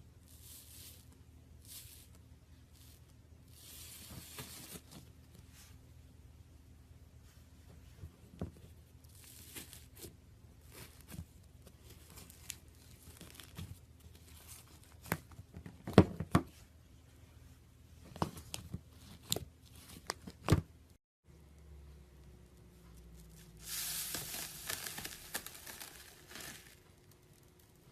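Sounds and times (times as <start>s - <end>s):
slime crust crackling: 23.4s - 27.9s.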